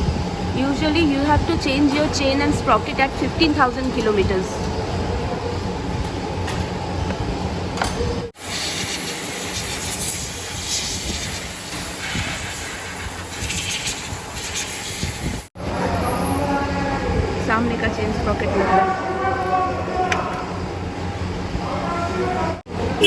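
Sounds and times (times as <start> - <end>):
steady workshop hissing: 8.3 - 15.6.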